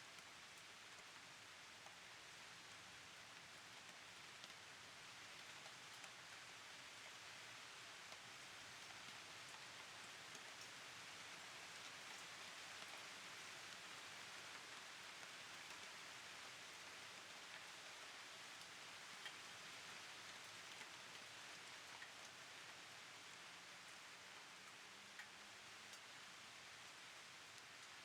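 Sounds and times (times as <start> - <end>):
faint steady rain: 0.0 - 28.0.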